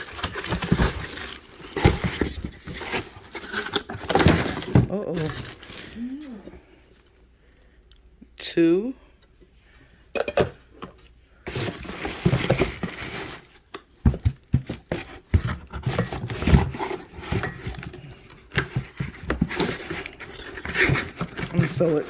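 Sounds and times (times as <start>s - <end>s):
packing material rustling: 0.0s - 6.5s, 11.5s - 13.6s, 14.2s - 22.0s.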